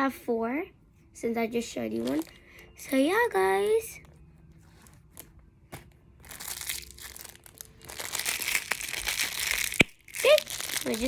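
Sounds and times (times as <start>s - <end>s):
plastic packaging crinkling: 1.9s - 2.6s, 6.2s - 11.0s.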